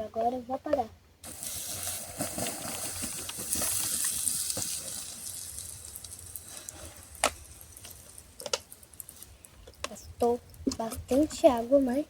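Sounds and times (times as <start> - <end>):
water hissing on campfire: 1.2 - 9.6.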